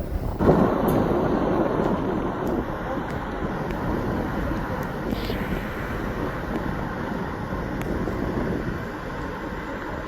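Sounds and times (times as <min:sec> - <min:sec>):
steady low rushing noise: 0:00.0 - 0:10.0.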